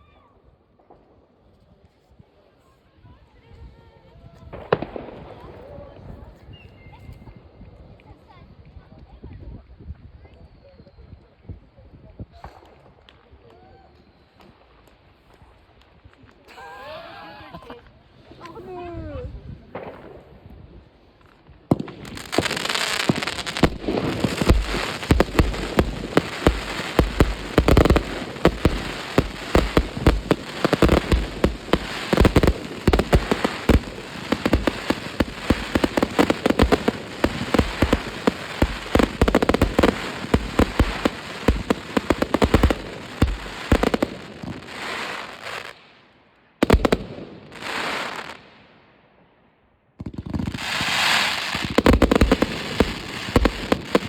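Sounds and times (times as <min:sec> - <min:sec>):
fireworks bangs and crackling: 0:04.3 - 0:06.6, 0:19.6 - 0:46.0, 0:46.6 - 0:48.8, 0:50.0 - 0:54.0.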